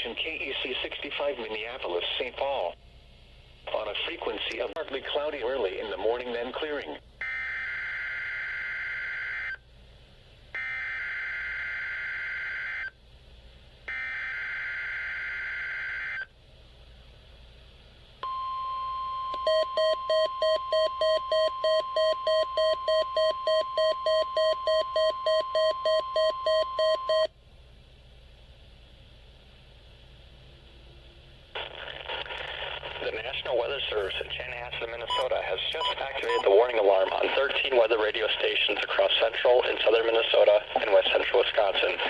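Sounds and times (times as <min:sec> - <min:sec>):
steady alarm tone: 0:07.2 - 0:09.6, 0:10.6 - 0:12.9, 0:13.9 - 0:16.2
rapid receiver beeps: 0:18.2 - 0:27.3, 0:35.0 - 0:37.9.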